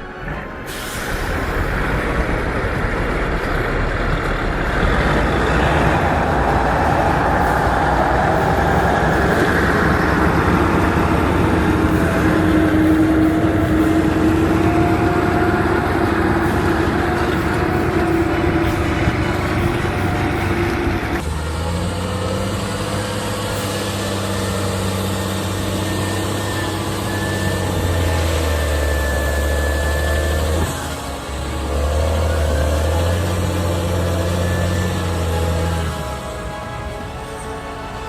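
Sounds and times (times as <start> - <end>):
whining tone: 0.0 - 37.5
heavy vehicle engine running: 0.0 - 38.0.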